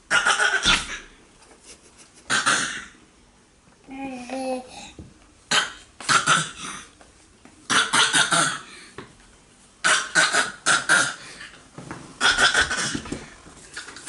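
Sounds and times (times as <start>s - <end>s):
young child coughing: 5.5s - 6.9s, 7.7s - 8.7s.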